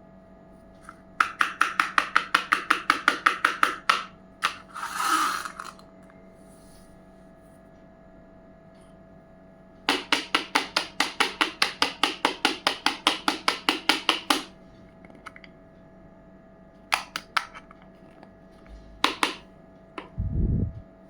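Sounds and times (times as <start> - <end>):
plastic toy pieces clicking: 4.4 - 5.8.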